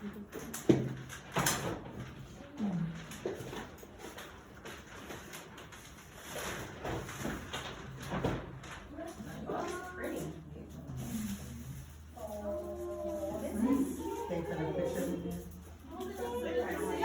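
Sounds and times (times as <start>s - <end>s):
wrapping paper rustling: 0.2s - 17.0s
low voices: 9.0s - 17.0s.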